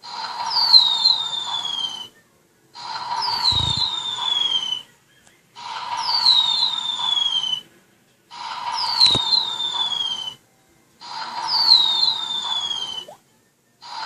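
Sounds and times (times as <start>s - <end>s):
toy robot electronic sound effect: 11.1s - 13.2s.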